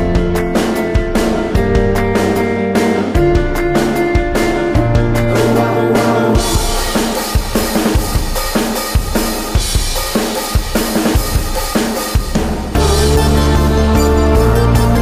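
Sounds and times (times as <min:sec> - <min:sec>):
drum kit beat: 0:00.0 - 0:15.0
sustained pitched tones: 0:05.3 - 0:07.9, 0:12.8 - 0:15.0.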